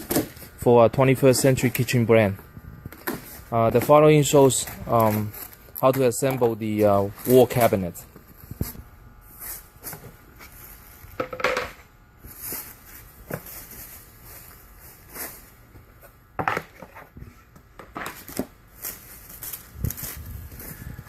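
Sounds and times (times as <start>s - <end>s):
knocks and clatters of parts: 11.2s - 11.8s, 16.4s - 18.5s.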